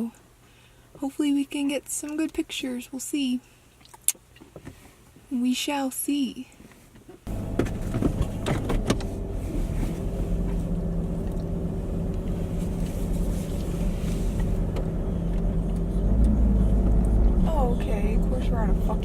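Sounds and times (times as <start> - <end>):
car engine running: 7.3 - 19.0.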